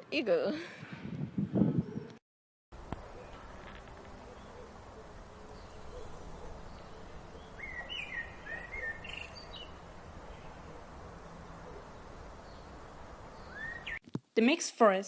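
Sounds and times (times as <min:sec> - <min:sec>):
outdoor background noise: 0:00.0 - 0:15.0
bird whistling call: 0:07.5 - 0:09.6, 0:13.4 - 0:14.0.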